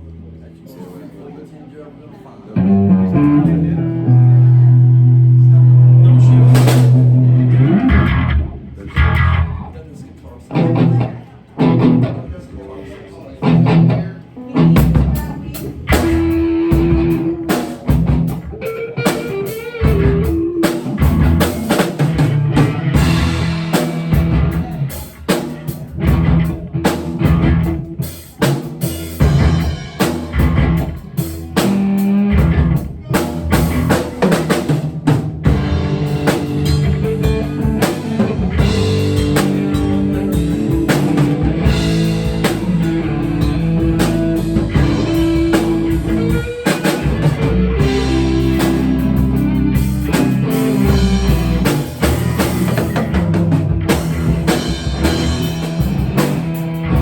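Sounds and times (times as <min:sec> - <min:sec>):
held bass and guitar notes: 0:02.6 - 0:57.0
drum hits: 0:06.2 - 0:09.4, 0:14.8 - 0:18.5, 0:26.0 - 0:57.0.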